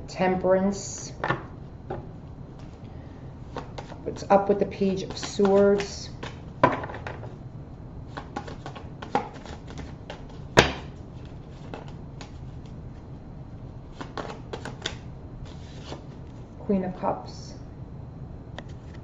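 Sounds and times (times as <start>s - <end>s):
cards clicking and flicking: 8.1s - 12.4s, 13.9s - 16.0s.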